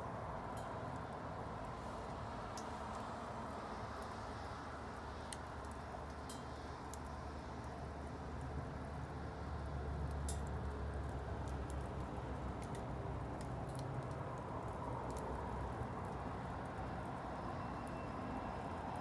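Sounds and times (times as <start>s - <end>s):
low rush of flame: 7.8s - 19.0s.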